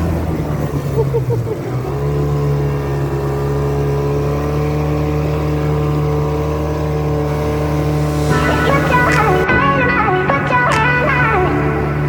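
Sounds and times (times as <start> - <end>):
outboard motor running: 1.5 - 8.2.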